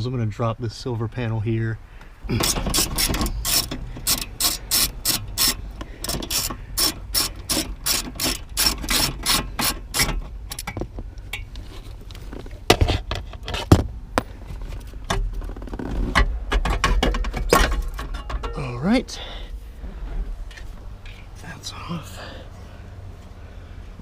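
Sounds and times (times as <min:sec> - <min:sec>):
ratchet wrench clicking: 0:02.4 - 0:10.8.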